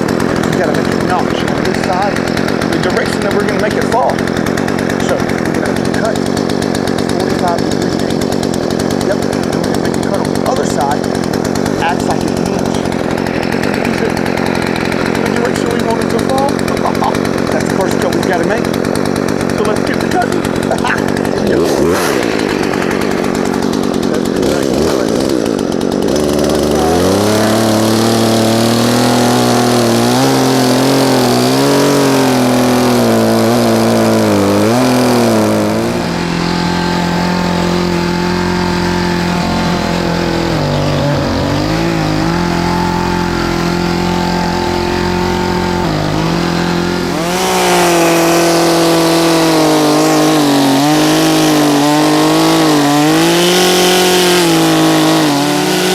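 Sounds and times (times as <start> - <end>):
chainsaw cutting wood: 0.0 - 55.9.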